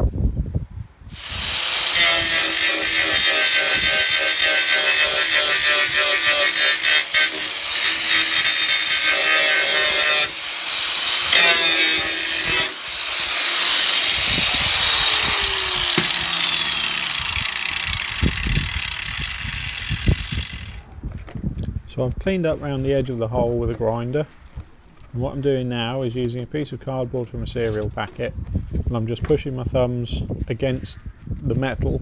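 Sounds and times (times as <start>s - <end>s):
angle grinder grinding steel: 1.1s - 20.8s.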